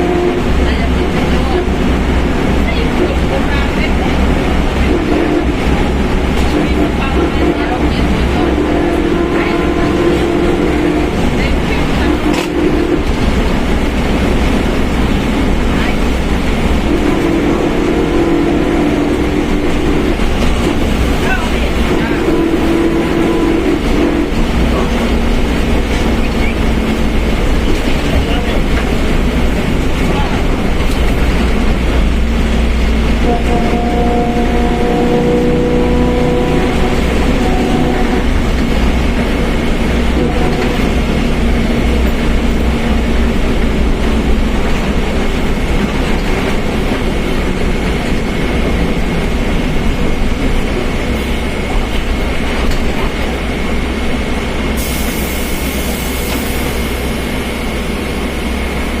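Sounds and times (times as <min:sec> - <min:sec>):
bus drivetrain drone and whine: 0:00.0 - 0:59.0
held multi-note horn tone: 0:04.8 - 0:11.3, 0:16.8 - 0:20.1, 0:22.0 - 0:24.4, 0:33.2 - 0:38.7, 0:40.1 - 0:41.3.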